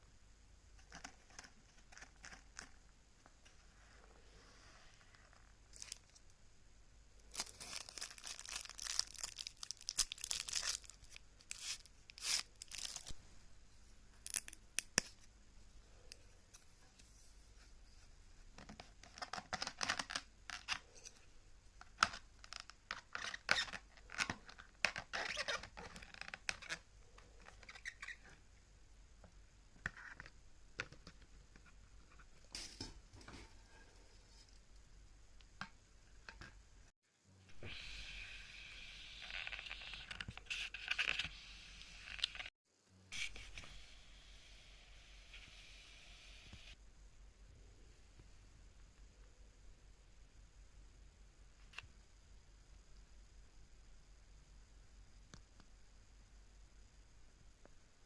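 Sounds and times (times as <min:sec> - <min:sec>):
plastic packaging tearing and crinkling: 0:07.3 - 0:13.2.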